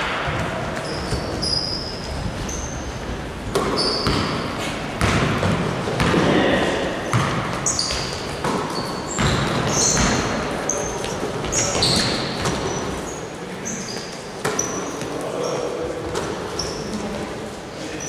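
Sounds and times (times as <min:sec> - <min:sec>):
basketballs bouncing on gym floor: 0:00.0 - 0:13.1
sneaker squeaks: 0:00.3 - 0:17.2.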